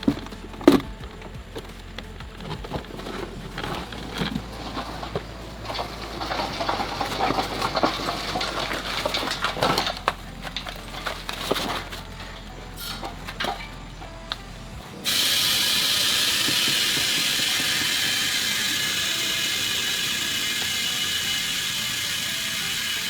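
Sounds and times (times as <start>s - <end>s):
low steady hum: 0.0s - 15.1s
small hard objects clattering: 0.0s - 23.0s.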